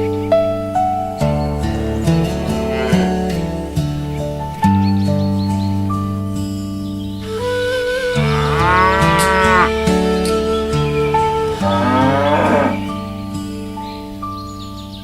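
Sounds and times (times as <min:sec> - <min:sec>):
background music: 0:01.3 - 0:14.0
cattle mooing: 0:01.4 - 0:04.1, 0:08.2 - 0:09.8, 0:11.6 - 0:12.9.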